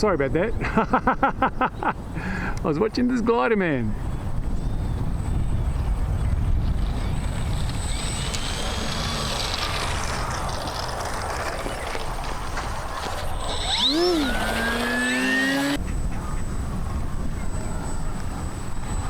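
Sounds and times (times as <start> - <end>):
glider whooshing through air: 6.8 - 15.8
faint whistles: 16.1 - 19.0.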